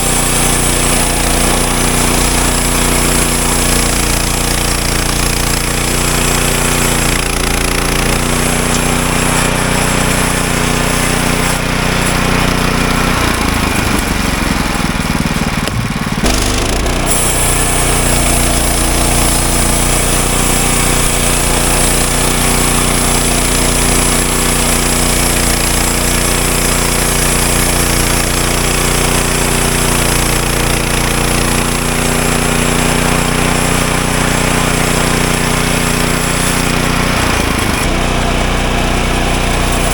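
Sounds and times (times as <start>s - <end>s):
bandsaw mill engine running: 0.0s - 39.9s
high hiss: 17.1s - 25.4s.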